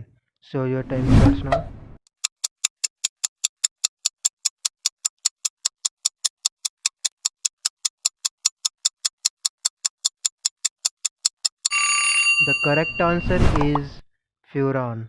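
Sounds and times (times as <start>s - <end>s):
timer ticking: 2.1s - 11.8s.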